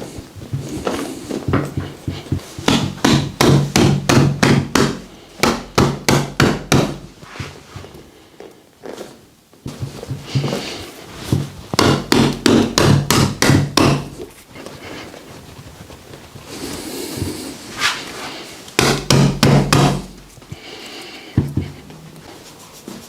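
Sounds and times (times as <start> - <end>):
percussive blows on a body: 1.5 - 7.1, 11.3 - 14.2, 18.8 - 20.3.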